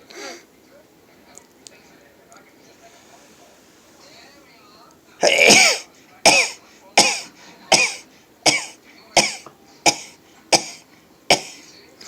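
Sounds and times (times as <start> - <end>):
man sneezing: 5.2 - 11.6.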